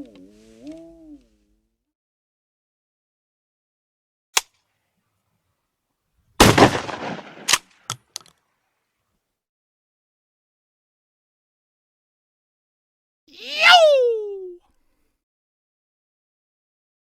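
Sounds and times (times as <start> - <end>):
small clicks: 4.4 - 4.6
gunshot-like blast: 6.4 - 7.6
sharp crack: 6.4 - 8.2.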